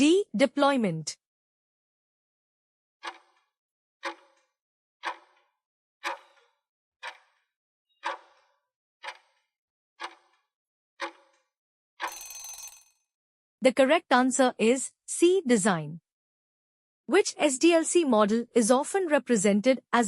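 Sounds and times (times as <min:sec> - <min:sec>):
clock ticking: 0:03.0 - 0:03.4, 0:04.0 - 0:04.4, 0:05.0 - 0:07.4, 0:08.0 - 0:09.4, 0:10.0 - 0:10.4, 0:11.0 - 0:11.4
bell ringing: 0:12.0 - 0:12.9.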